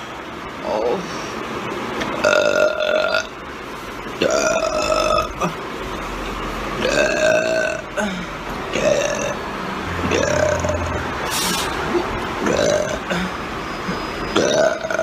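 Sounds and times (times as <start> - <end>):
woman belching: 8.8 - 13.2.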